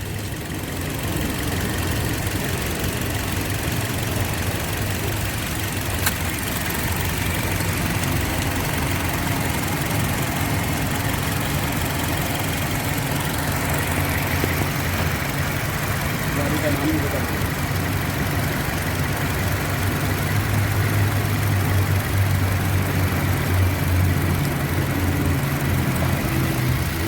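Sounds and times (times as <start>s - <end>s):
car engine idling: 0.0s - 27.0s
sharp click: 6.0s - 6.3s.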